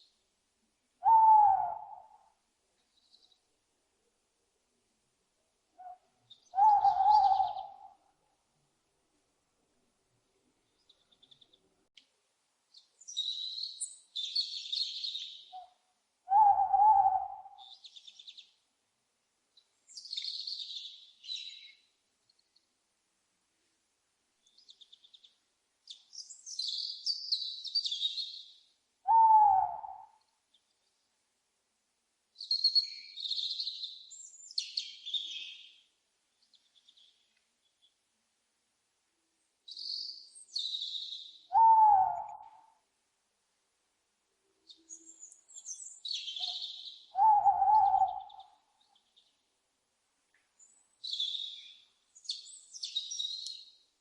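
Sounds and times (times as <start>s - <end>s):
owl hooting: 1.0s - 2.4s, 5.8s - 8.0s, 15.5s - 17.8s, 29.0s - 30.2s, 40.8s - 42.8s, 46.1s - 48.7s.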